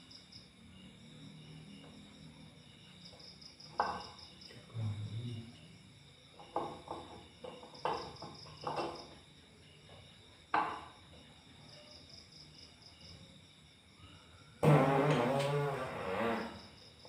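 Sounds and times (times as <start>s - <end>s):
crickets chirping: 0.0s - 17.0s
knocks and clatters: 6.4s - 9.2s.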